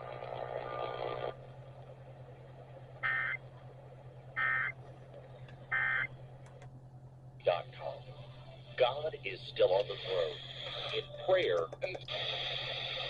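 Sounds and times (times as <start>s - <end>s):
steady low hum: 0.0s - 13.0s
radio hiss: 7.5s - 13.0s.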